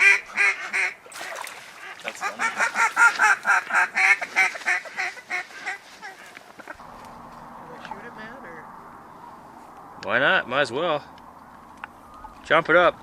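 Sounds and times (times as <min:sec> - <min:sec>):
ducks quacking rapidly: 0:00.0 - 0:01.0, 0:01.6 - 0:06.8.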